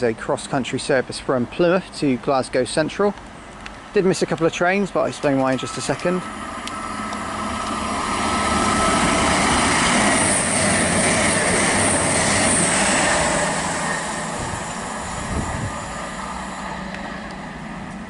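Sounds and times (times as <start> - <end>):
train passing at speed: 3.8 - 18.0
wheels hissing on rails: 4.8 - 18.0.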